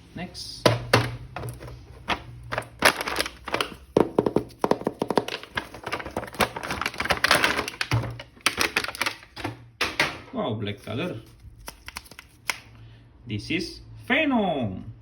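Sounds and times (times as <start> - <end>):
plastic packaging clicks and knocks: 0.7 - 10.2
packaging crinkling rustle: 1.5 - 9.4, 10.8 - 12.6.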